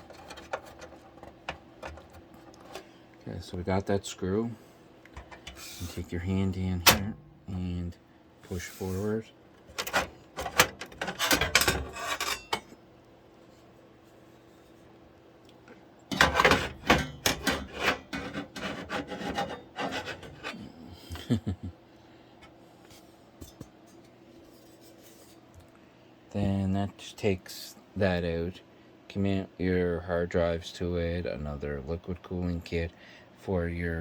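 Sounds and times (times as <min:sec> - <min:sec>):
computer case scraping and knocking: 0:16.1 - 0:20.4.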